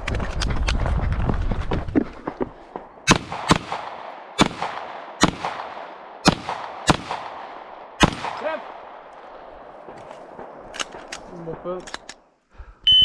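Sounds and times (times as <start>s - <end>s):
pistol shots: 3.0s - 12.1s.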